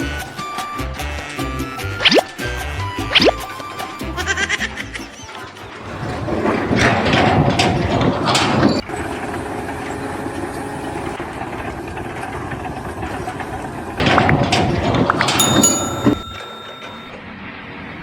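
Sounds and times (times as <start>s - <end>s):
sharp metal clanks: 15.4s - 17.2s.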